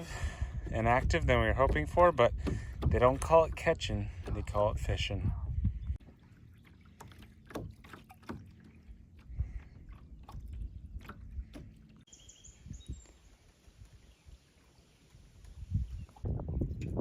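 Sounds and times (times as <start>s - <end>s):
light knocks against hull: 0.0s - 5.0s, 6.9s - 12.0s
water lapping around boat: 0.0s - 17.0s.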